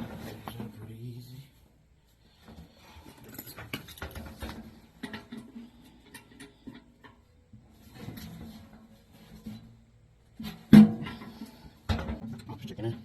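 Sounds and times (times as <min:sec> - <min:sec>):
tool handling clicks and rustling: 0:02.5 - 0:07.3.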